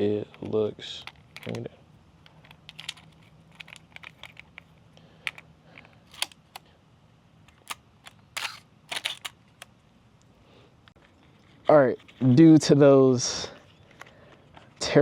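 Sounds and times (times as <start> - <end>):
camera mechanism clicks and snaps: 6.1 - 6.6, 7.5 - 9.7
short scraping rasps: 7.6 - 9.4.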